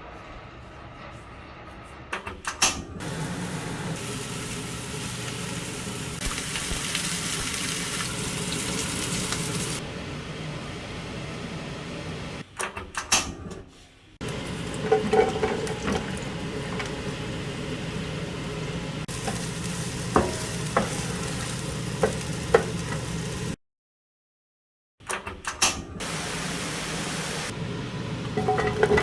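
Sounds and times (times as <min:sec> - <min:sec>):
food sizzling in a pan: 0:03.0 - 0:09.8, 0:16.0 - 0:23.6, 0:26.0 - 0:27.5
utensil clinking against pan: 0:28.4 - 0:29.0.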